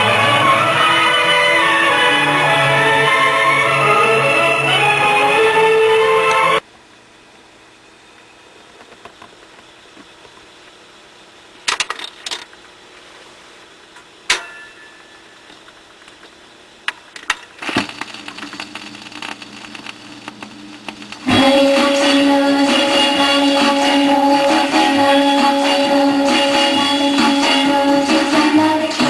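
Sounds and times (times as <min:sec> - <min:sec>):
radio music: 0:00.0 - 0:06.6, 0:17.6 - 0:29.0
static clicks and crackles: 0:08.6 - 0:11.0, 0:11.6 - 0:14.1, 0:15.4 - 0:21.3
radio static hiss: 0:17.6 - 0:29.0.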